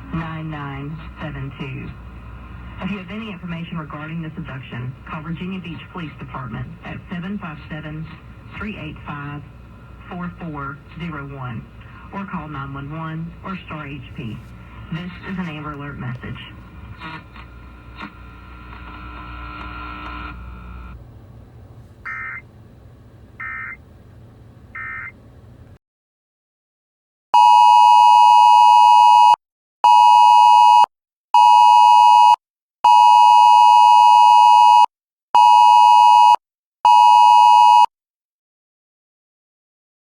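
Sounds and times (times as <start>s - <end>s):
rasping data bursts: 22.0s - 22.4s, 23.4s - 23.8s, 24.8s - 25.1s
two-pitch alert tone: 22.1s - 22.4s.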